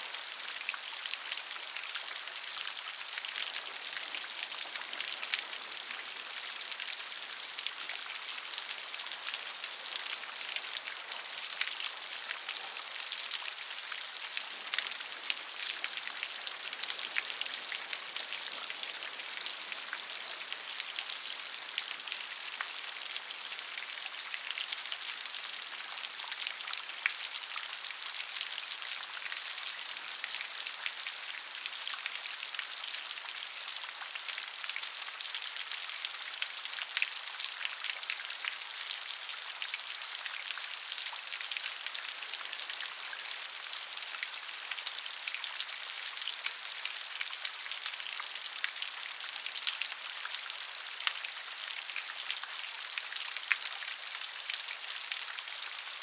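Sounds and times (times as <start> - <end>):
steady rain: 0.0 - 56.0.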